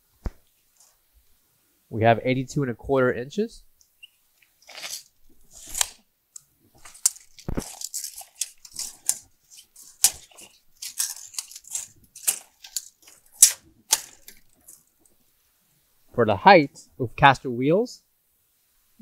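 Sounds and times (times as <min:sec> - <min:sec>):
tape measure clicks and rattles: 0:06.8 - 0:14.8.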